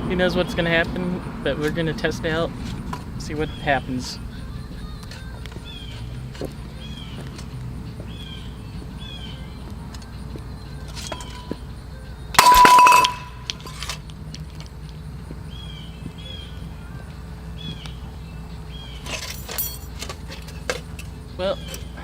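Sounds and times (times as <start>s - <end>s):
ringing tone: 12.4s - 13.4s
crock pot crashing onto ground: 12.4s - 13.8s.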